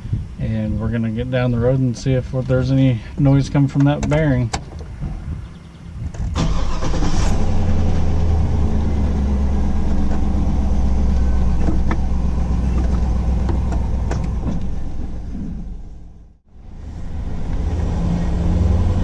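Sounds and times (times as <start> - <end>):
road noise inside car: 1.7 - 19.0
car engine running: 6.5 - 19.0.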